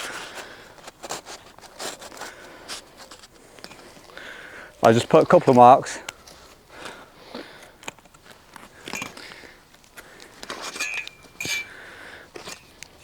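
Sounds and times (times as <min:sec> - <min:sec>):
light clicks taps and rustles: 0:07.6 - 0:11.7.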